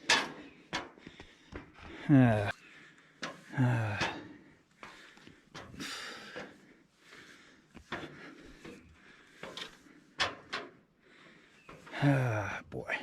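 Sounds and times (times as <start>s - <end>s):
footfalls on metal stairs: 0.0s - 2.5s
man breathing hard: 0.2s - 12.7s.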